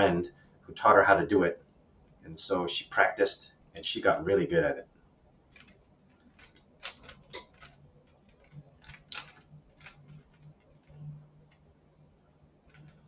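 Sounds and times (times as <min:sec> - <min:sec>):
faint low hum: 0:00.0 - 0:13.0
puzzle cube plastic clicks: 0:05.5 - 0:11.7, 0:12.7 - 0:13.0.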